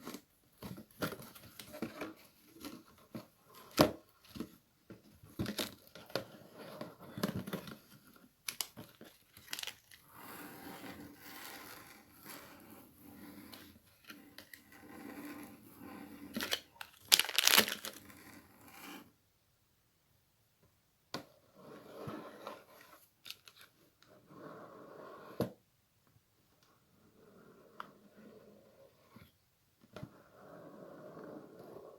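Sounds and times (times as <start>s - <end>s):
material rustling and crinkling: 0.0s - 10.1s, 16.3s - 18.1s.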